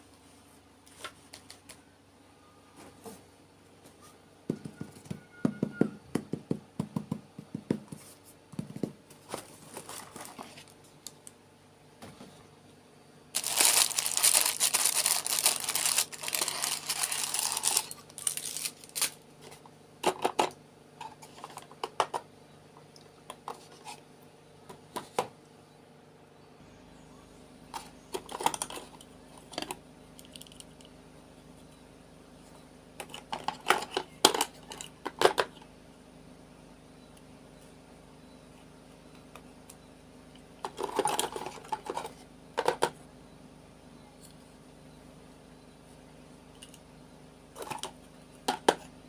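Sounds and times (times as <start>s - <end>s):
plastic crinkling and tearing: 13.4s - 19.2s.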